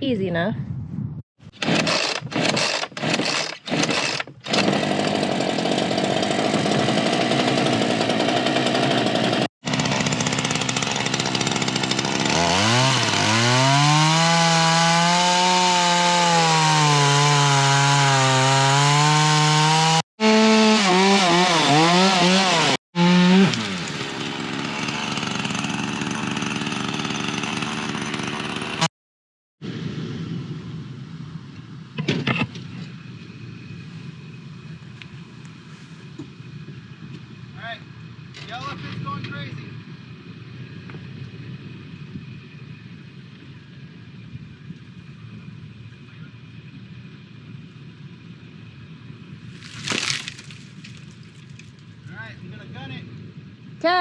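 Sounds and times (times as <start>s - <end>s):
chainsaw cutting wood: 1.5s - 28.9s, 49.5s - 51.1s.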